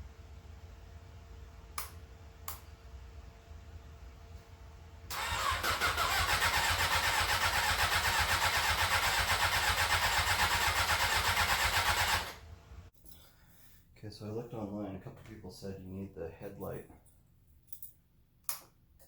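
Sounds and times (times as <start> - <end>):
motorcycle starter cranking: 5.1 - 12.4.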